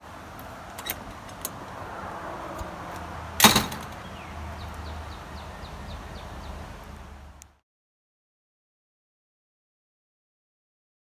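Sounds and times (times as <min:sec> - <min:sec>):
door slamming shut: 0:03.4 - 0:04.2.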